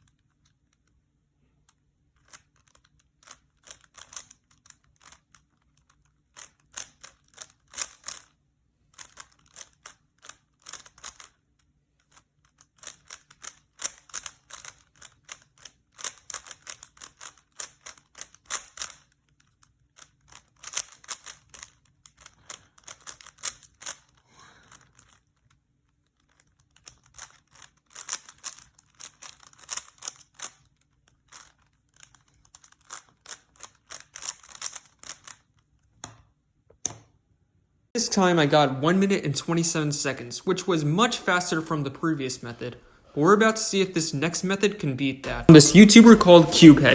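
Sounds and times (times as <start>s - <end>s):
puzzle cube clicking as twisted: 2.2s - 11.4s, 12.0s - 25.5s, 26.1s - 35.5s.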